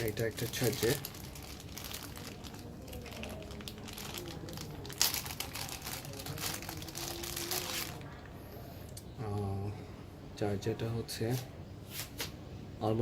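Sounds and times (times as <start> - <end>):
plastic packaging crinkling: 0.0 - 8.2.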